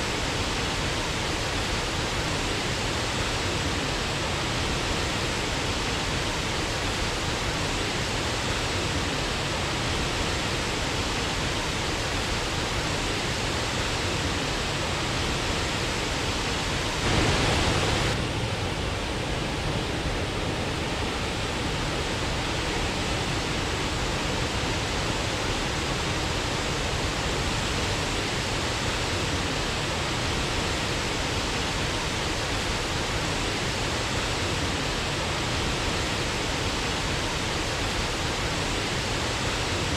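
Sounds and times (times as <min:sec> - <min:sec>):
waterfall rushing: 0:15.8 - 0:18.4.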